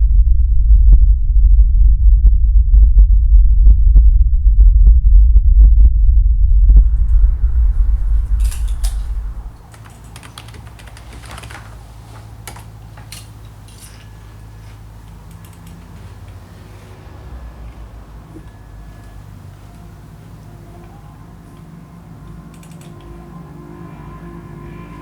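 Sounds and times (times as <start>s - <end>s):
loud deep rumble: 0.0s - 10.0s, 10.6s - 25.0s
faint low hum: 0.0s - 25.0s
light clicks and taps: 8.4s - 16.4s.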